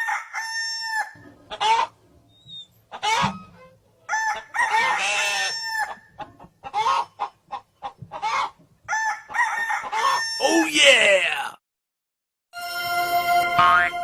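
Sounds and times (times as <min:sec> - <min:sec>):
rooster crowing: 0:00.0 - 0:01.2, 0:04.1 - 0:06.0, 0:08.9 - 0:10.4
chicken clucks: 0:00.8 - 0:10.4.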